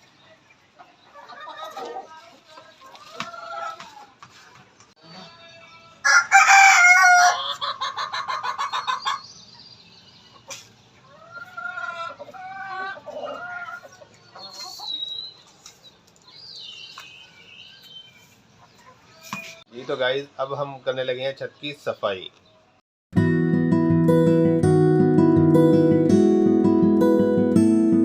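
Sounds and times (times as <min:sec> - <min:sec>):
chickens clucking: 0:00.0 - 0:05.8, 0:06.5 - 0:17.0, 0:17.8 - 0:20.2
rooster crowing: 0:06.0 - 0:07.7.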